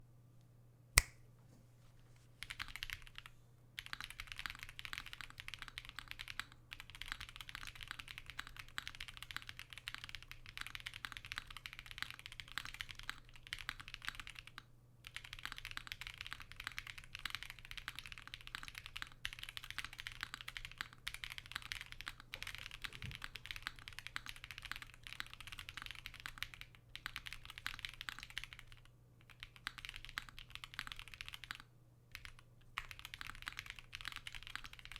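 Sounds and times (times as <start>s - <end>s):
sharp click: 1.0s - 1.2s
mechanical keyboard typing: 2.4s - 34.9s.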